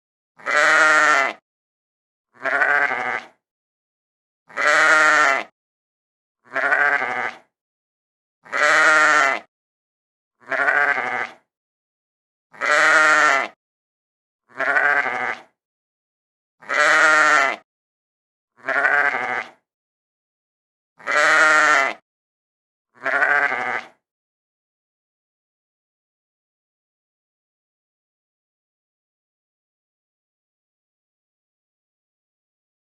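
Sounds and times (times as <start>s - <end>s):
sheep bleating: 0.4s - 1.4s, 2.4s - 3.4s, 4.5s - 5.5s, 6.4s - 7.5s, 8.4s - 9.5s, 10.4s - 11.5s, 12.5s - 13.6s, 14.5s - 15.5s, 16.6s - 17.6s, 18.6s - 19.6s, 21.0s - 22.0s, 23.0s - 24.0s.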